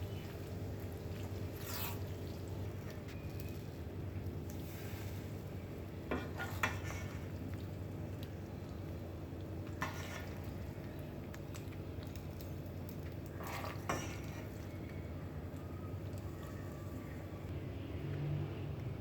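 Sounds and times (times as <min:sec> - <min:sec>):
utensil scraping in a pan: 0:06.1 - 0:07.4, 0:09.6 - 0:10.7, 0:13.2 - 0:14.7.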